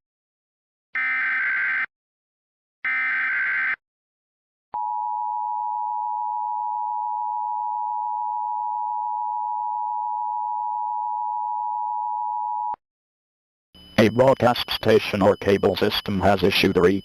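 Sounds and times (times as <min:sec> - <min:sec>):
harsh electronic warble: 0:13.8 - 0:17.0
steady electronic alert tone: 0:13.8 - 0:17.0.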